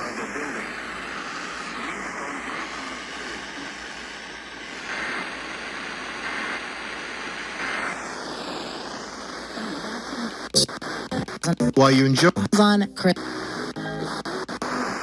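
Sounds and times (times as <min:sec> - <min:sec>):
radio static hiss: 0:00.0 - 0:15.0
static surges: 0:04.2 - 0:15.0.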